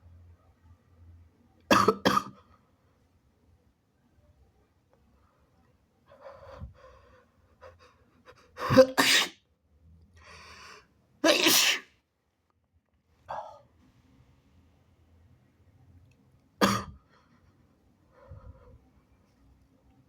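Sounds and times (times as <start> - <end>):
man sneezing wetly: 8.6 - 9.4, 11.2 - 11.9.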